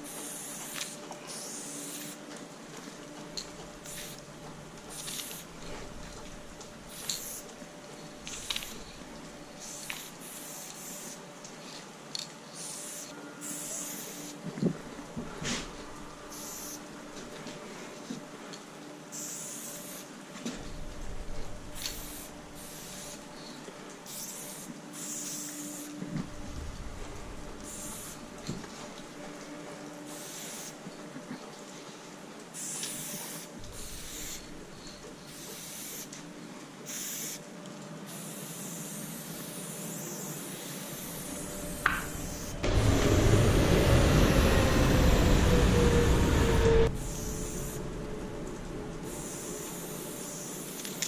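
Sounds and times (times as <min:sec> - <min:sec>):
spray paint can hissing: 0:00.1 - 0:02.1, 0:03.8 - 0:04.2, 0:04.9 - 0:05.5, 0:06.9 - 0:07.5, 0:08.2 - 0:08.9, 0:09.6 - 0:11.2, 0:12.6 - 0:14.3, 0:16.3 - 0:16.8, 0:19.1 - 0:20.1, 0:21.8 - 0:23.2, 0:24.1 - 0:25.9, 0:27.6 - 0:28.2, 0:30.1 - 0:30.8, 0:32.6 - 0:34.5, 0:35.3 - 0:36.1, 0:36.9 - 0:37.4, 0:38.1 - 0:42.6, 0:47.0 - 0:47.8, 0:49.0 - 0:51.0
rushing noise with falling tone: 0:41.1 - 0:50.4.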